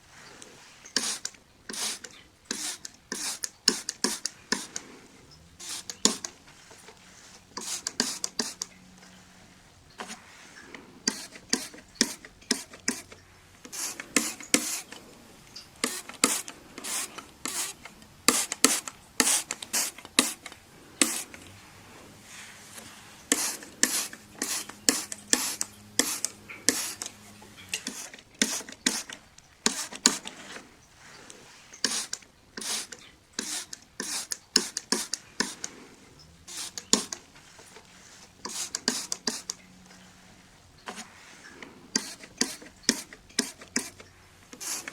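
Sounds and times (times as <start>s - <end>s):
wiping strokes on glass: 0.0s - 44.9s.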